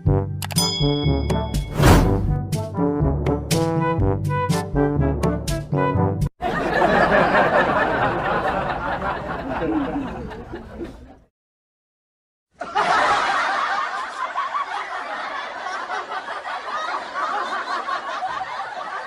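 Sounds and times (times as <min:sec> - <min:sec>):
burst of laughter: 0:12.6 - 0:19.0.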